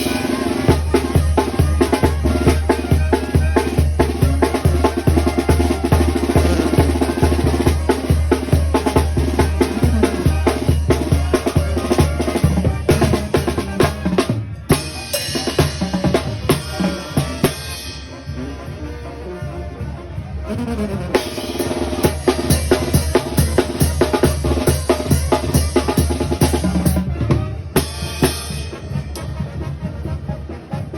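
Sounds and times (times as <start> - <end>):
driving drum beat: 0.0 - 18.4, 21.1 - 30.9
brass band playing: 0.0 - 30.9
low bass line: 6.3 - 7.1.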